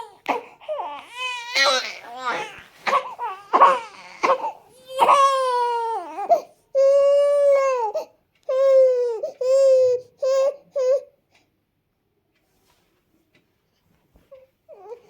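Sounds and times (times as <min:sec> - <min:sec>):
infant crying: 0:00.0 - 0:11.1, 0:14.7 - 0:15.0.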